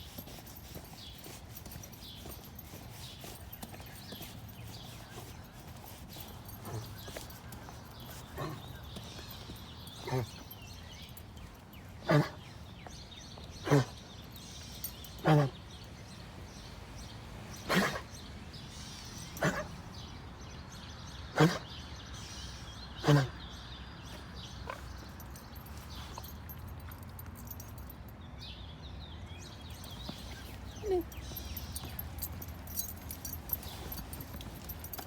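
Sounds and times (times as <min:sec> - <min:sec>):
animal coughing: 0:08.1 - 0:08.8, 0:10.0 - 0:10.5, 0:12.0 - 0:12.6, 0:13.6 - 0:14.1, 0:15.2 - 0:15.6, 0:17.7 - 0:18.1, 0:19.4 - 0:19.8, 0:21.3 - 0:21.7, 0:23.0 - 0:23.4.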